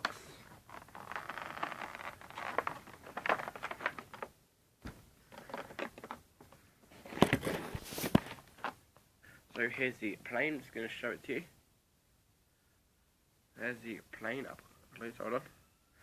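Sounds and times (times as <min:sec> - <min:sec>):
packaging rustling with small clicks: 0:00.0 - 0:04.4, 0:05.2 - 0:08.8.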